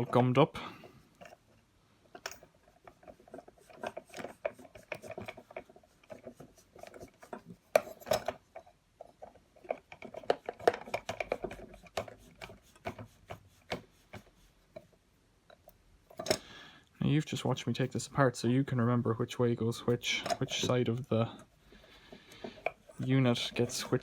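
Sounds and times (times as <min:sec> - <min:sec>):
small fan parts clicking and scraping: 0:00.0 - 0:24.0.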